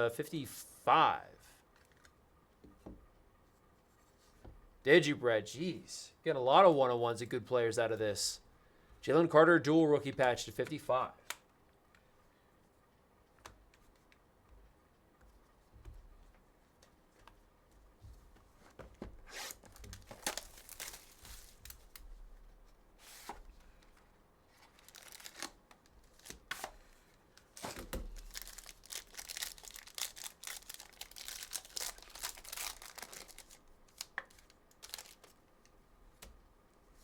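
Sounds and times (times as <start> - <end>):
card packaging tearing and crinkling: 19.3 - 22.0, 24.6 - 26.8, 27.4 - 35.4.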